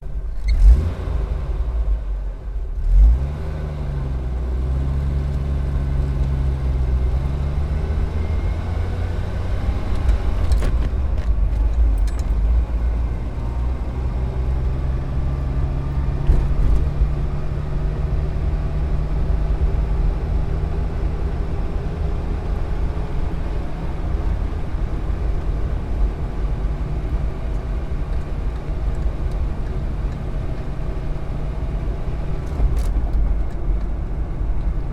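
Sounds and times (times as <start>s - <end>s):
car engine and road rumble: 0.0s - 34.9s
thump: 16.2s - 16.9s.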